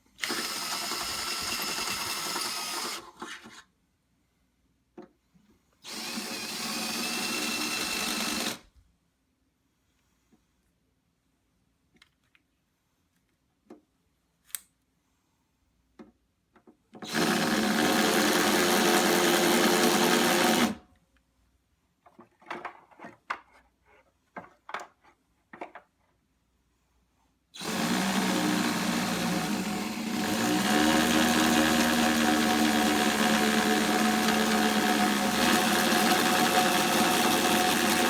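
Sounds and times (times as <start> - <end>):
electric power drill running: 0.2 - 3.1, 5.9 - 8.6, 17.0 - 20.8, 27.6 - 38.0.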